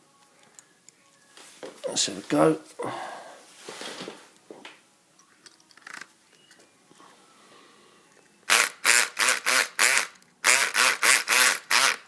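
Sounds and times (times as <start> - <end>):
electric pick gun buzzing: 8.5 - 12.0.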